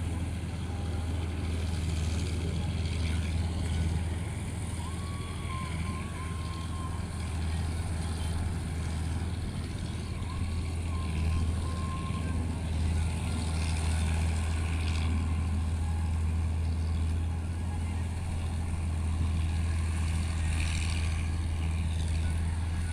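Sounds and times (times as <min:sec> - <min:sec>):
combine harvester engine drone: 0:00.0 - 0:22.9.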